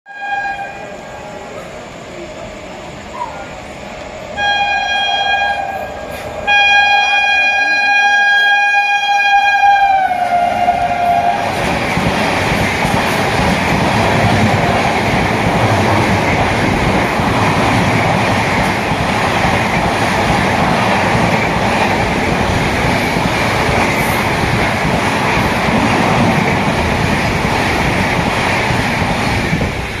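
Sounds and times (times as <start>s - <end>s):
train horn: 0.1s - 1.2s, 4.4s - 11.6s
train rumbling past: 0.1s - 30.0s.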